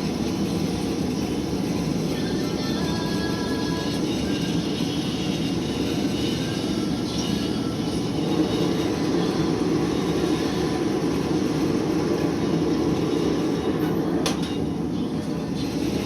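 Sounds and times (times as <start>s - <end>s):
forge roaring: 7.7s - 16.0s.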